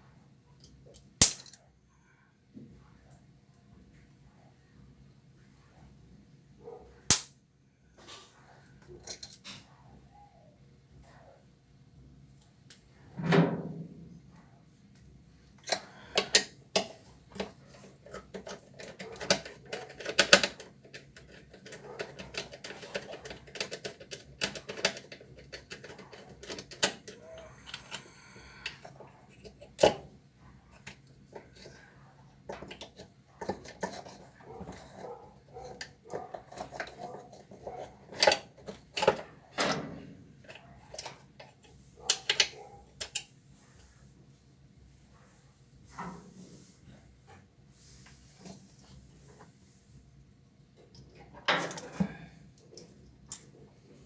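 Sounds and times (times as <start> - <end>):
tools clicking and clattering: 15.6 - 27.9.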